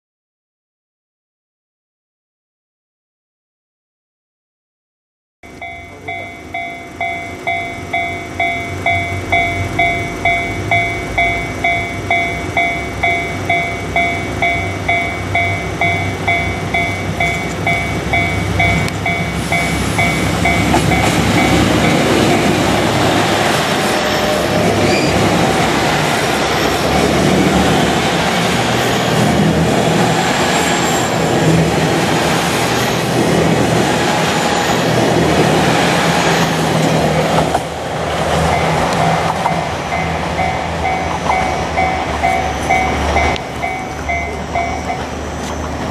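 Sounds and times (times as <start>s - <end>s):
level crossing warning bell: 5.4s - 28.7s, 38.3s - 45.9s
train rumble: 5.4s - 45.9s.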